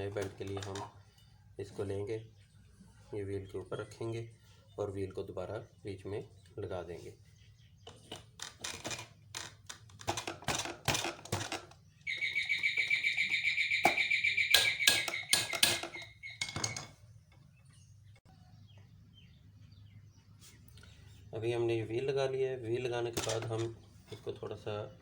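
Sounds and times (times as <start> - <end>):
sewing machine parts clicking: 7.9 - 12.4
bird chirping rapidly: 11.9 - 20.3.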